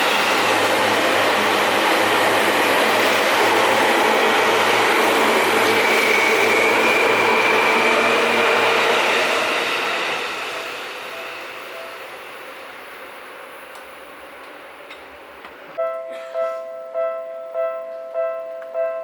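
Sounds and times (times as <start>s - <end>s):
electric train passing: 0.0s - 19.0s.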